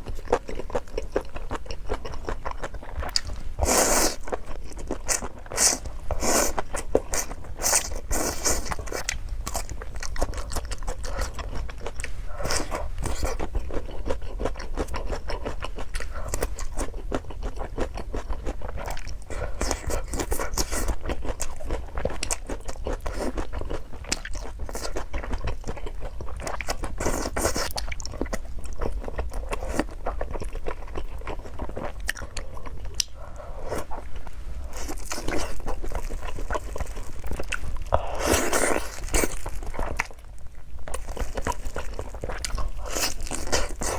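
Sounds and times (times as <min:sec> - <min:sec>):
crunchy food being chewed: 0:00.0 - 0:43.9.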